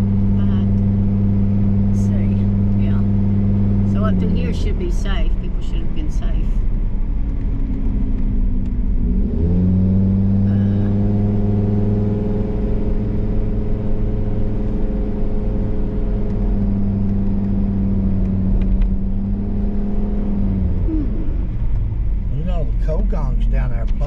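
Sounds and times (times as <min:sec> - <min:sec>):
car engine hum: 0:00.0 - 0:24.0
road rumble: 0:00.0 - 0:24.0.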